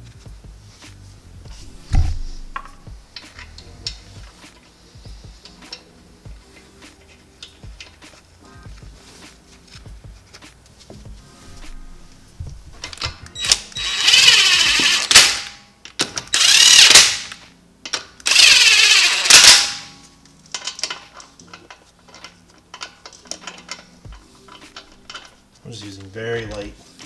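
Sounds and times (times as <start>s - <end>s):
socket and nuts rattling: 12.6s - 17.4s, 18.2s - 19.9s
power tool bursts: 13.4s - 15.6s, 16.3s - 17.4s, 18.2s - 19.9s.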